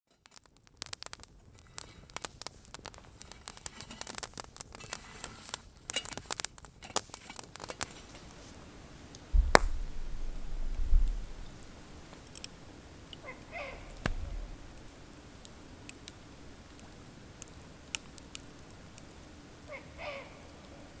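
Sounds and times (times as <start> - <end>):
crackling and rustling clicks: 0.1 - 19.4
low rumble: 9.3 - 12.1, 13.7 - 15.0.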